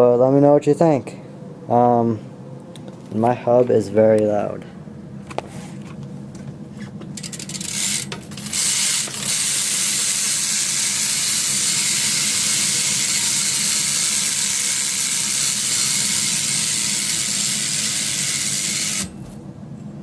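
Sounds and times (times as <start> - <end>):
bike hub clicks: 7.2 - 19.1
bike hub ratcheting buzz: 7.2 - 19.4.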